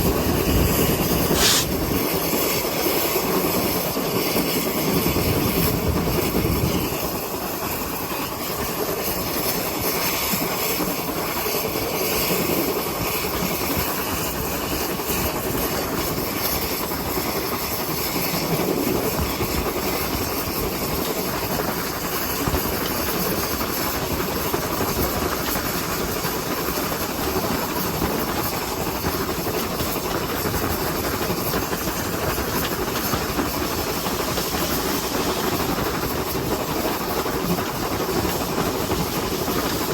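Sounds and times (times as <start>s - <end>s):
steam locomotive running: 0.0s - 39.9s
steam hiss: 0.2s - 4.6s, 27.6s - 39.9s.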